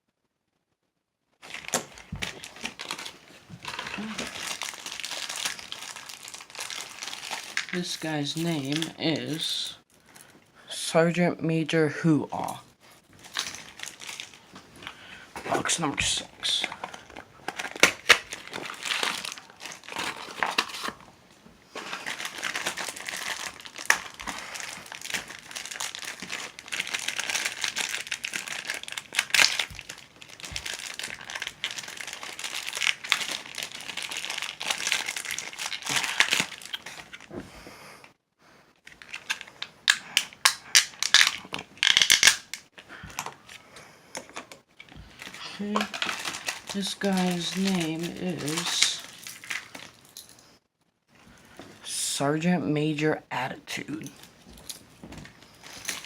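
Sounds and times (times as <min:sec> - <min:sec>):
packaging tearing: 0:01.4 - 0:09.6, 0:13.2 - 0:14.4, 0:16.4 - 0:21.0, 0:21.8 - 0:37.3, 0:38.9 - 0:42.7, 0:45.1 - 0:50.0
plastic wrappers crinkling: 0:01.4 - 0:10.4, 0:12.4 - 0:37.4, 0:38.8 - 0:43.6, 0:44.2 - 0:50.5, 0:54.0 - 0:56.0.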